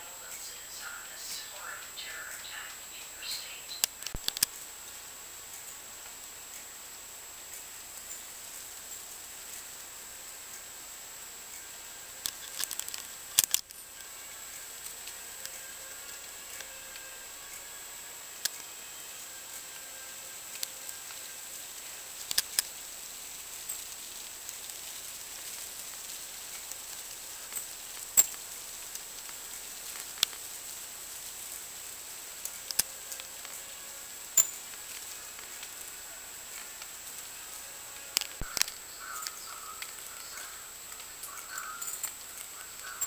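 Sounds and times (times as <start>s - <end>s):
background hiss: 0.0s - 43.0s
sharp clicks and taps: 3.7s - 4.6s, 12.2s - 13.8s, 34.4s - 35.8s
faint bird chirps: 38.4s - 43.0s.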